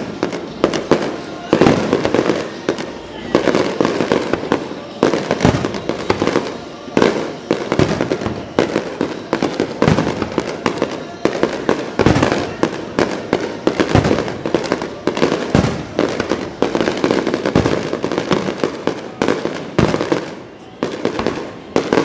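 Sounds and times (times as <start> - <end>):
fireworks bangs: 0.0 - 22.0
fireworks crackling: 0.0 - 22.0.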